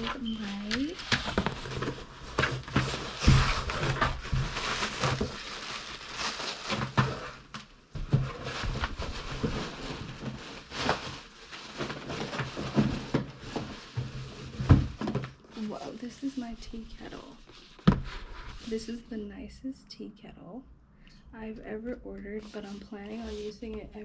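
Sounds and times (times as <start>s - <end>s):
packaging rustling and crinkling: 0.0s - 18.9s
knocks and thuds: 2.4s - 5.4s, 12.5s - 15.3s, 17.8s - 18.1s.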